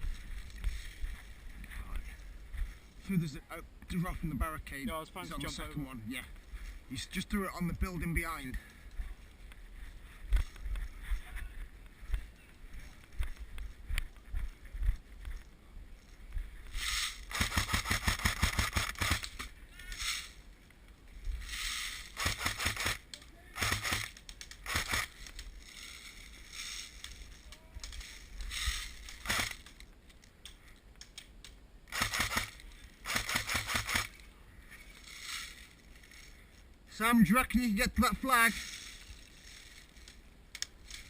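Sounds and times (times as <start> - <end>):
airsoft gun bursts: 16.8 - 19.4, 21.5 - 25.2, 28.5 - 29.6, 31.9 - 34.2.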